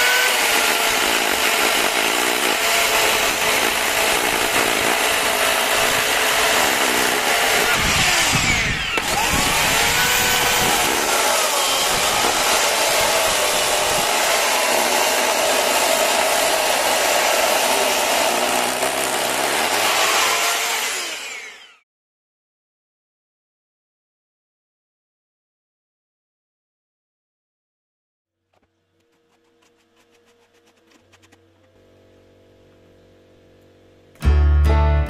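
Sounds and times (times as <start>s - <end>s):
power tool running: 0.0s - 21.8s.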